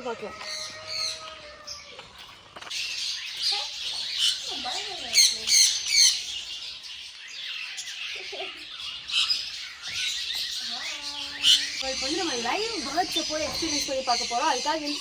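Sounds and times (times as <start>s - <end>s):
birds squawking and chirping: 0.0s - 15.0s
loud bird squawks: 7.6s - 15.0s.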